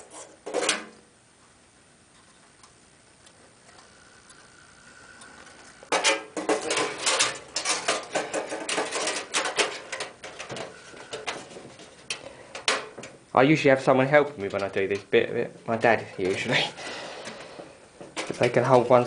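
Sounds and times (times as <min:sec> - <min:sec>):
sheet-metal backplate rattling and clicking: 0:05.9 - 0:13.2.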